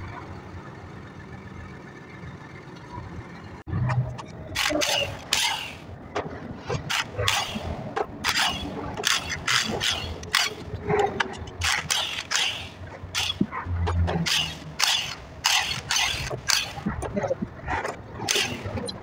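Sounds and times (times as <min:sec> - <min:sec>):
metal tools clinking and scraping: 0:03.9 - 0:05.8, 0:06.7 - 0:19.0.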